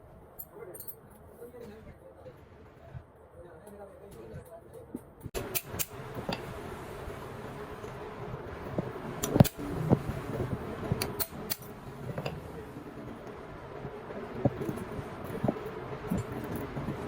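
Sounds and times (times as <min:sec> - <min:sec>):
steady hum: 0:05.2 - 0:17.0.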